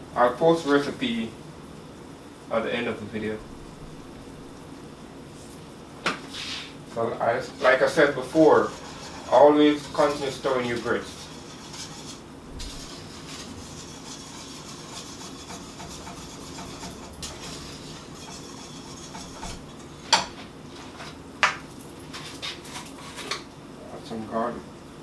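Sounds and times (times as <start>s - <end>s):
spoon scraping pot: 7.5s - 21.2s
utensil clicking on pot: 8.6s - 20.4s.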